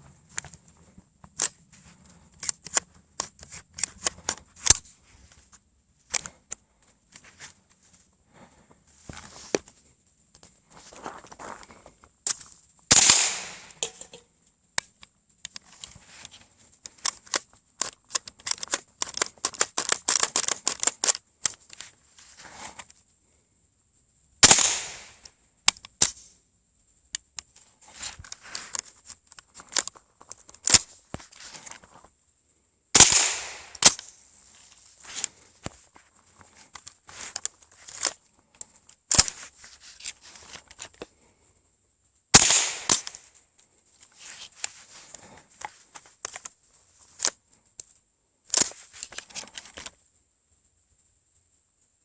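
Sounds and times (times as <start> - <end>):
metallic clicks of rifle handling: 1.2 - 4.9, 6.1 - 6.6, 12.2 - 22.0, 24.4 - 26.4, 27.1 - 31.9, 33.0 - 35.8, 36.4 - 41.2, 42.3 - 43.4, 44.0 - 50.0
rifle shots echoing: 12.9 - 14.0, 24.4 - 25.2, 33.0 - 34.0, 42.3 - 43.1.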